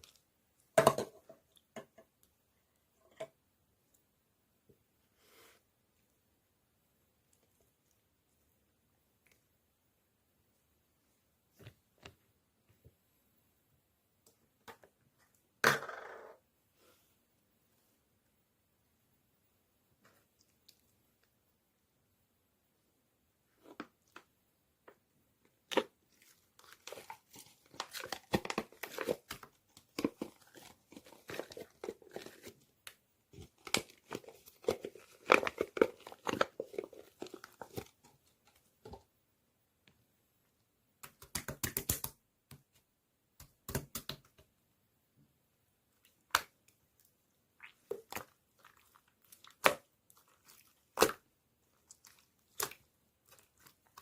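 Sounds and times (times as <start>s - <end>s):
slime crackling and popping: 47.6s - 54.0s.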